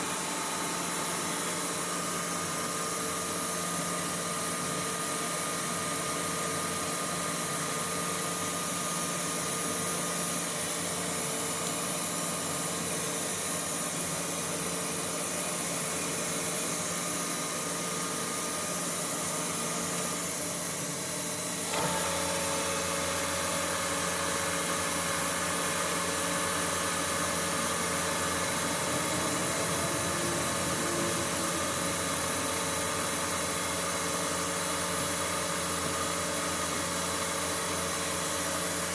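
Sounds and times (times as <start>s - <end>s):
machine tool motor humming: 15.6s - 38.9s.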